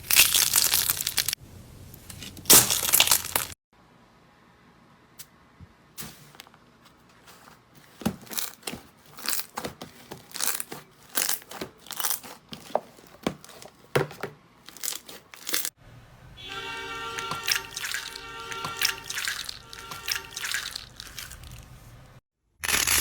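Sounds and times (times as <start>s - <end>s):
slime crackling and popping: 0.0s - 1.4s, 2.5s - 3.6s, 22.6s - 23.0s.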